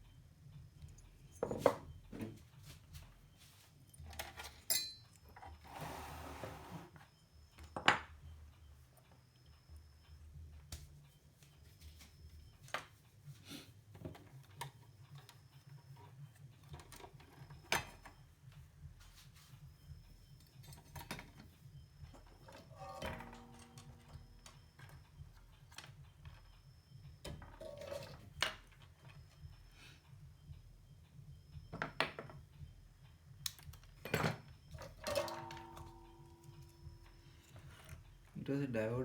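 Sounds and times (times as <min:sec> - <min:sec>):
low steady hum: 0:17.7 - 0:39.0.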